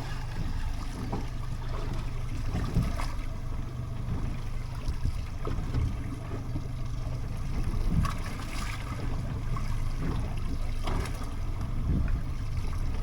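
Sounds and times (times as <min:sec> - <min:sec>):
low rumble: 0:00.0 - 0:01.3
water slapping against boat hull: 0:00.0 - 0:13.0.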